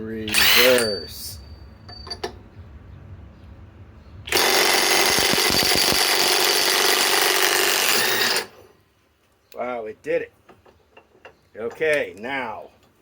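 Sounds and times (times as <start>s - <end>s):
impact wrench hammering: 4.3s - 8.6s.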